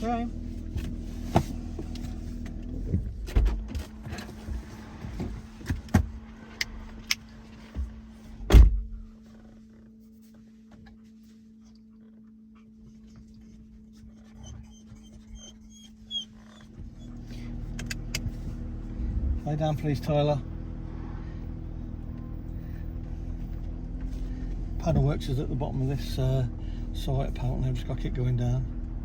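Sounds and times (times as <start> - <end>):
steady low hum: 0.0 - 29.0
car door shutting: 0.8 - 7.0, 7.8 - 9.1
dog whining: 14.1 - 18.0.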